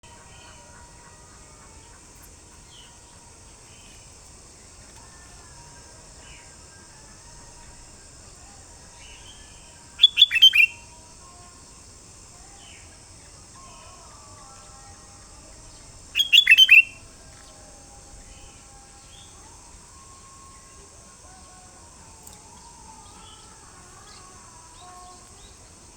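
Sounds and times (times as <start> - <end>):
steady high hiss: 0.0 - 25.9
faint bird chirps: 4.9 - 11.6, 12.4 - 21.6
bulbul calling: 10.0 - 10.8, 16.2 - 17.0.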